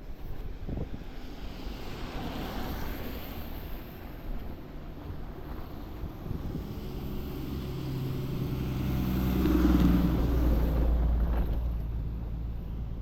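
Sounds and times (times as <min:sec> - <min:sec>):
vehicle driving past: 0:06.5 - 0:11.5.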